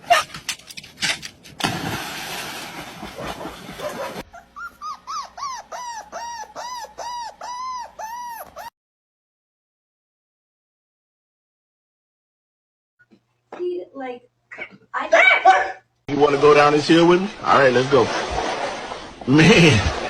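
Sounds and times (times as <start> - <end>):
animal high calls: 4.3 - 8.7.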